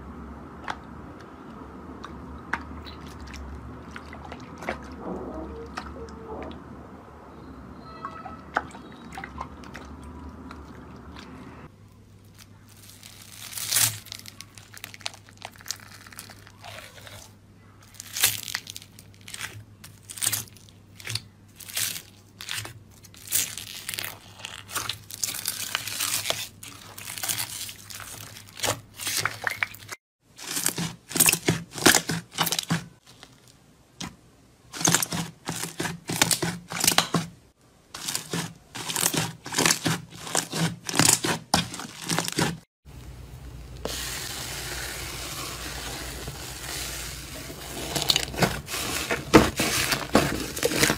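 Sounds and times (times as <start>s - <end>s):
slime crackling and popping: 12.3s - 17.2s.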